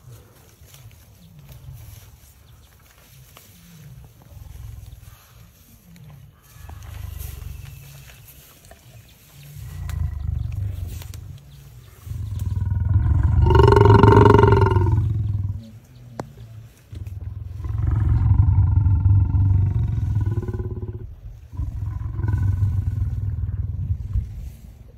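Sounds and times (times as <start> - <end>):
lion roaring: 12.0 - 15.8, 16.9 - 24.3.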